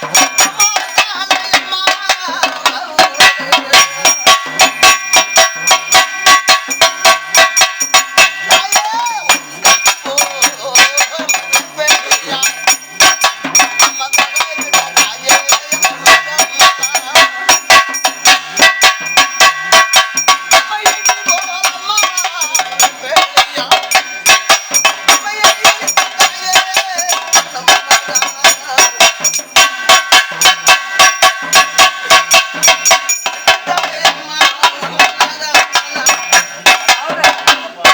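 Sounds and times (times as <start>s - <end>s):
drums beating fast rhythm: 0.0s - 37.9s
ringing metallic tone: 0.0s - 37.9s.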